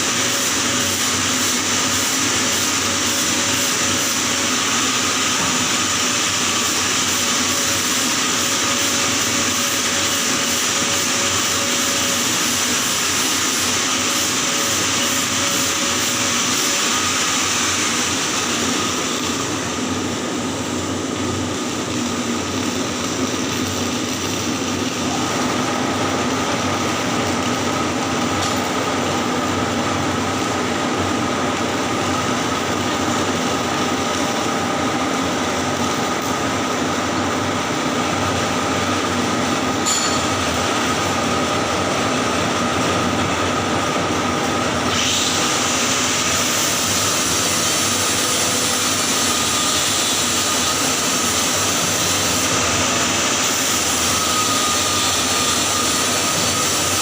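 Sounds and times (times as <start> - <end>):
arc welding hiss: 0.0 - 57.0.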